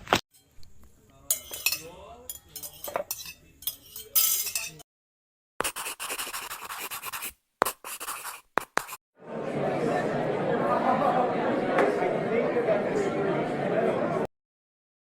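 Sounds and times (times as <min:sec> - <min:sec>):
cutlery and dishes clinking: 0:01.2 - 0:04.8
pencil scratching on paper: 0:05.6 - 0:09.0.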